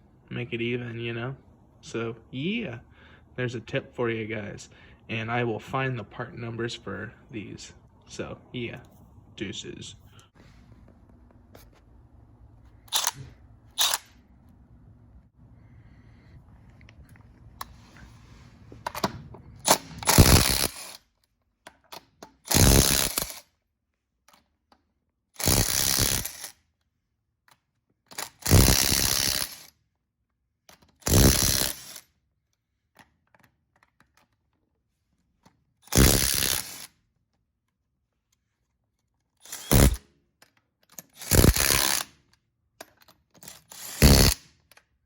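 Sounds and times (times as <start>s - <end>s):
rattling tool bursts: 12.8s - 14.2s, 19.0s - 21.0s, 22.4s - 23.4s, 25.4s - 26.6s, 28.1s - 29.7s, 31.0s - 32.0s, 35.9s - 36.9s, 39.4s - 40.0s, 41.0s - 42.2s, 43.4s - 44.6s.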